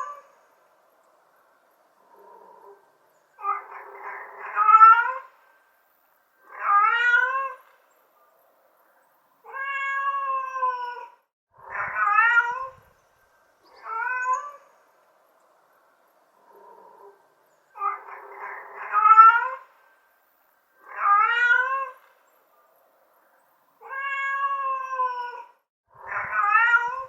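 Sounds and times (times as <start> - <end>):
cat meowing: 3.4 - 5.3, 6.4 - 7.7, 9.4 - 12.8, 13.8 - 14.6, 17.8 - 19.6, 20.8 - 22.0, 23.8 - 27.0.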